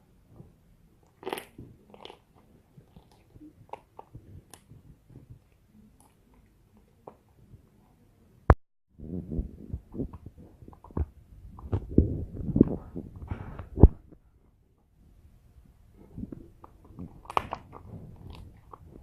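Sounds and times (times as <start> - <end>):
slime squishing and crackling: 1.0 - 7.3, 16.4 - 19.0.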